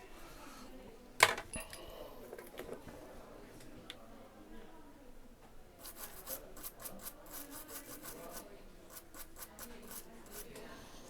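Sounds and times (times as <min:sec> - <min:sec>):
scraping strokes on hard surface: 0:05.8 - 0:11.0.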